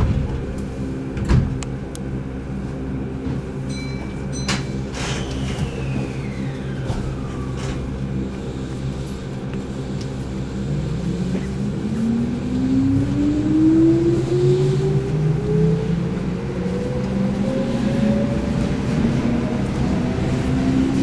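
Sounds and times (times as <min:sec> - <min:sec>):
train running noise: 0:00.0 - 0:21.0
faint tone gliding down: 0:04.5 - 0:08.6
traction motor whine rising: 0:04.8 - 0:21.0.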